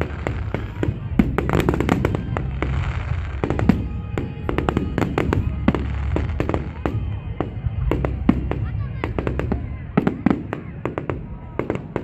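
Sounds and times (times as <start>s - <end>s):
fireworks bangs and pops: 0.0s - 12.0s
fireworks crackling: 0.0s - 12.0s.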